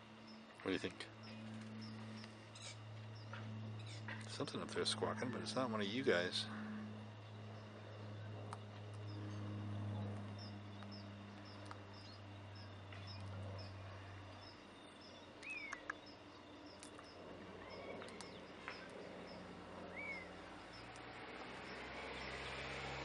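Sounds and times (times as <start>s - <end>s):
small bird chirping: 0.2s - 4.4s, 6.1s - 22.8s
whistled bird calls: 14.4s - 19.0s, 19.9s - 20.8s
sharp clicks: 15.4s - 16.1s, 18.0s - 19.0s.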